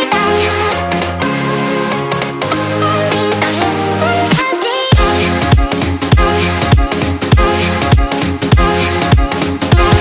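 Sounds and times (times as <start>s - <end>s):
electronic dance music: 0.0s - 10.0s
heavy bass drum: 4.9s - 10.0s.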